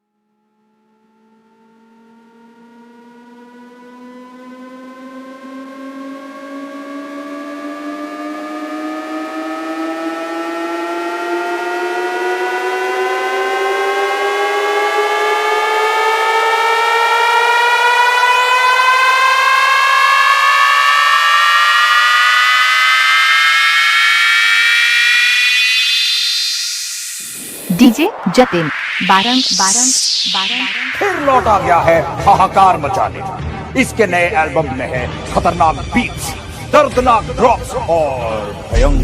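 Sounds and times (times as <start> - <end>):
synthesized rising sweep: 0.3 - 35.3, 38.6 - 39.0
second rising tone: 17.9 - 33.7.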